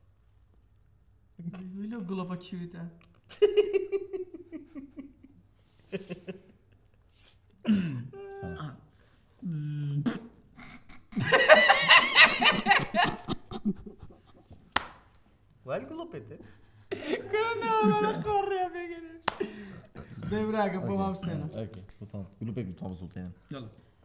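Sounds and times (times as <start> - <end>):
people laughing: 3.3 - 7.0, 11.1 - 14.5, 16.4 - 18.8
person humming: 7.8 - 10.9
person making mouth noises: 8.2 - 11.2, 12.8 - 14.8.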